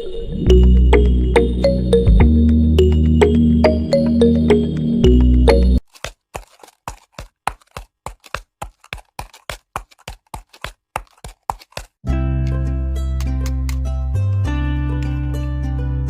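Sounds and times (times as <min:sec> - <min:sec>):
music: 0:00.3 - 0:05.8, 0:12.0 - 0:16.0
rapid sharp taps: 0:05.9 - 0:12.0.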